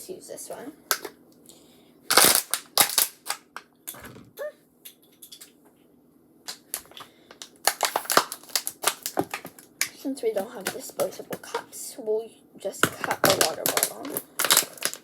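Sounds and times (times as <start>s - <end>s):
plastic water bottle crackling: 2.1s - 3.5s, 6.5s - 11.7s, 12.8s - 15.0s.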